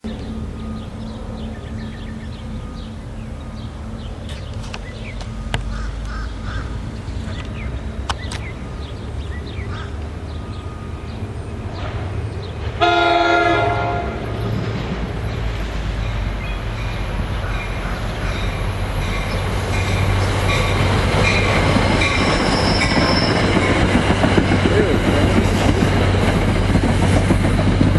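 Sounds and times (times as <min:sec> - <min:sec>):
low outdoor rumble: 0:00.0 - 0:21.1
birds calling: 0:00.1 - 0:26.7
locomotive air horn blowing: 0:12.8 - 0:14.3.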